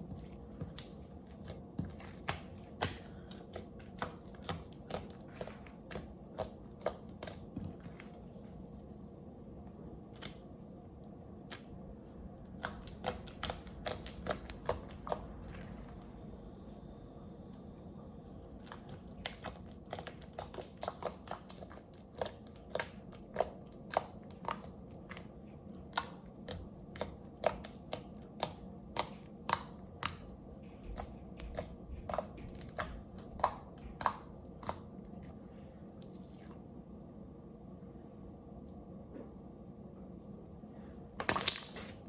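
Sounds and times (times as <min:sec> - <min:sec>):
slime wet clicks and pops: 0:41.2 - 0:42.0.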